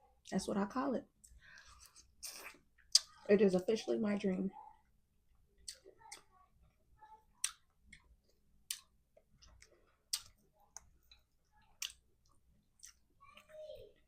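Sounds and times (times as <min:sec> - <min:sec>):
chewing: 0:05.6 - 0:14.0.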